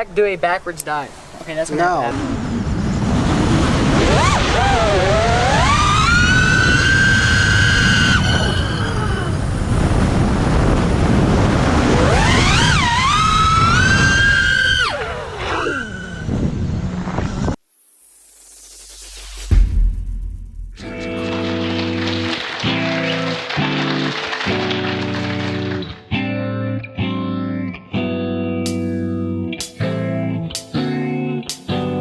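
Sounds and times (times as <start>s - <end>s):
quadcopter motors whining: 1.2s - 17.6s
heavy low rumble: 19.3s - 22.5s.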